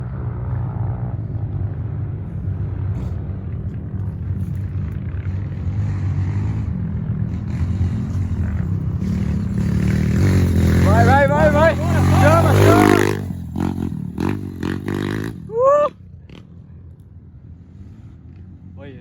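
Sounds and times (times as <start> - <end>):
vehicle engine running: 1.1 - 15.4.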